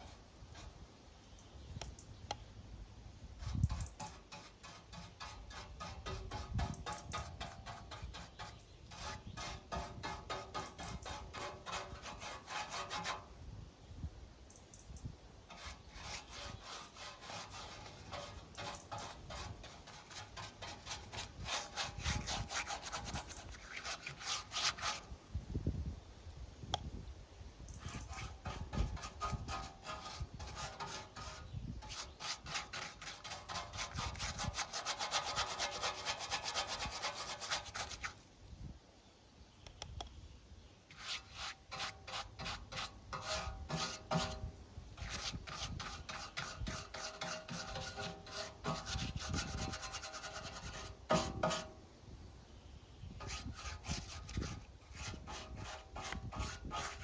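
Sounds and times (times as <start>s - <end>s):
scrubbing on metal: 3.4s - 13.3s, 15.5s - 25.1s, 27.8s - 38.2s, 40.9s - 51.8s, 53.2s - 57.0s.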